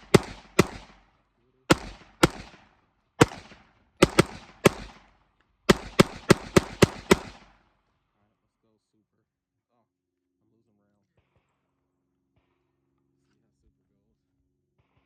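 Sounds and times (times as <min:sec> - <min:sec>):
rifle shots with echo: 0:00.0 - 0:07.8.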